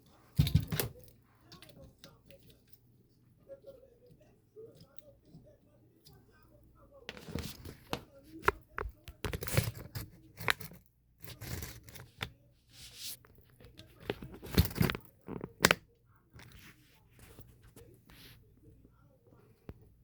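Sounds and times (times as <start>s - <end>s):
handling clicks and knocks: 13.5s - 15.8s.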